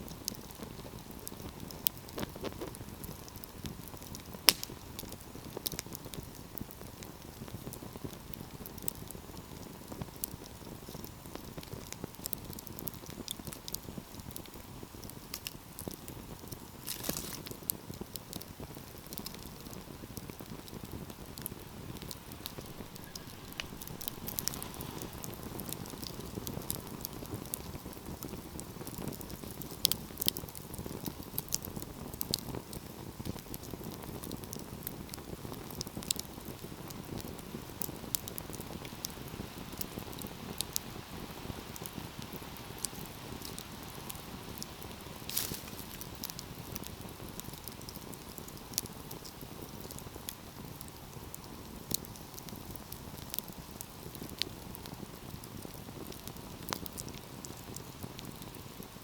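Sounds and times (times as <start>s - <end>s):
wood fire crackling: 0.0s - 59.0s
low rush of burning: 14.1s - 32.4s, 41.7s - 50.9s.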